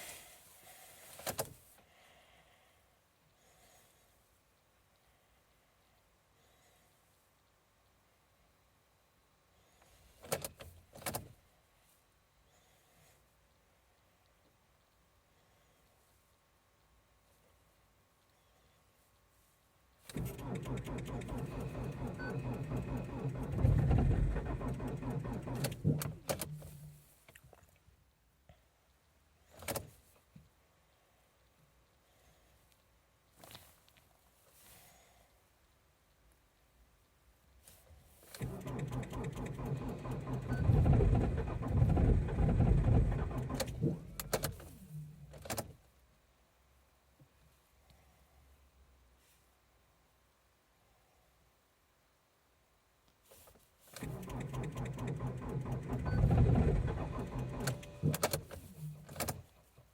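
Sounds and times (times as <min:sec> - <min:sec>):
starter motor cranking: 0:20.1 - 0:26.7, 0:38.3 - 0:45.0, 0:54.0 - 0:59.5.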